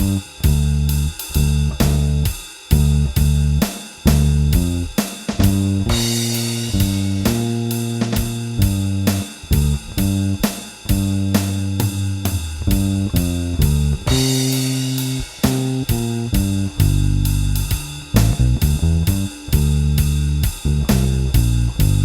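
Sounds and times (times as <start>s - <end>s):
drum kit: 0.0s - 22.0s
electric bass line: 0.0s - 22.0s
cymbal crash: 5.9s - 8.5s, 14.1s - 16.5s.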